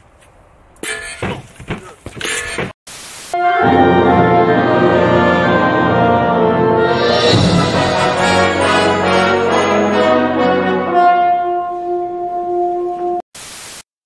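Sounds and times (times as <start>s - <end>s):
orchestral music led by brass: 3.4s - 13.2s.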